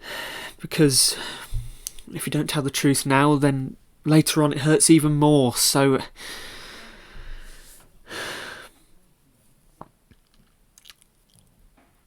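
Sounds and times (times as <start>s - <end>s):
man breathing: 0.0s - 2.1s, 6.2s - 9.0s
faint mouth clicks: 10.1s - 11.5s.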